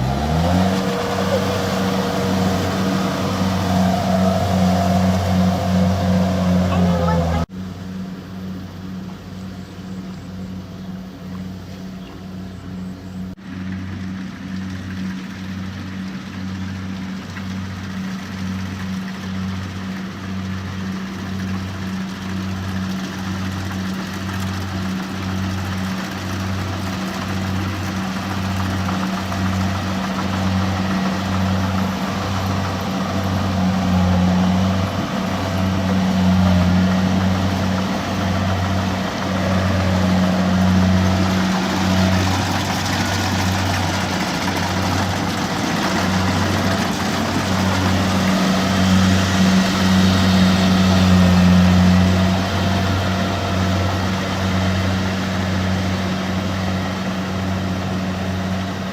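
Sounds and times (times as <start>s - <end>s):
harvester engine humming: 0.0s - 58.9s.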